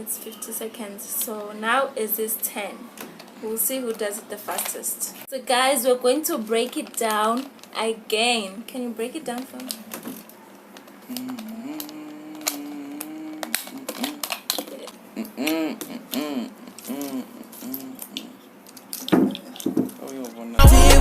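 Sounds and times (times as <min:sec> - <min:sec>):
plastic puzzle cube pieces clicking: 0:09.4 - 0:15.0
person humming: 0:11.1 - 0:18.4.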